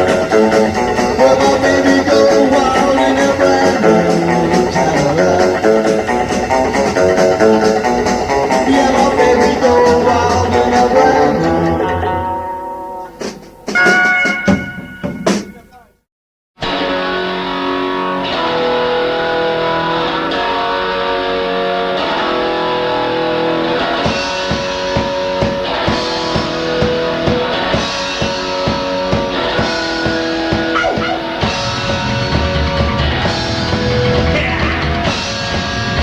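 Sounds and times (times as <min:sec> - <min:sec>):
drums steady beat: 0:00.0 - 0:12.0, 0:13.0 - 0:16.0, 0:23.3 - 0:36.0
distorted electric guitar: 0:00.0 - 0:15.8, 0:16.6 - 0:36.0.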